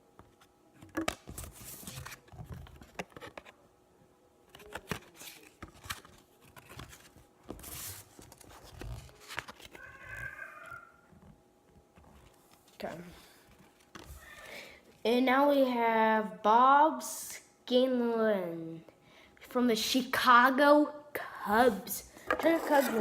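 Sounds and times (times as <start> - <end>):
trading cards rustling and sliding: 1.2 - 3.5, 4.5 - 10.1, 22.1 - 23.0.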